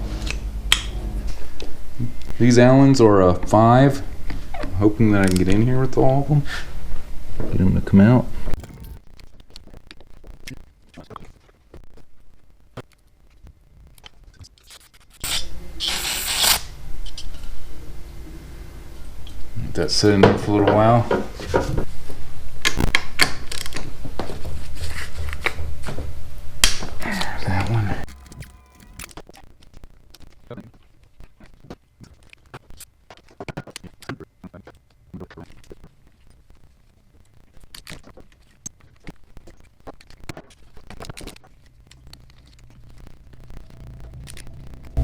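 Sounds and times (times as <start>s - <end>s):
metal clicks of hand tools: 28.1s - 29.1s.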